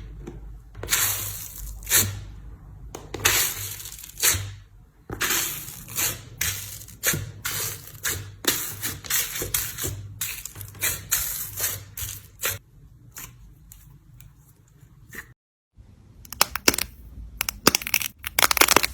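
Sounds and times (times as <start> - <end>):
slime squelching and popping: 16.3 - 18.9.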